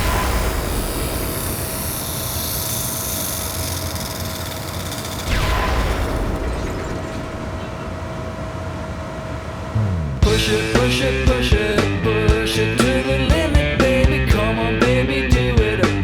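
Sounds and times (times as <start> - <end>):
steady hum: 0.0 - 15.8
vehicles passing by: 7.6 - 16.0.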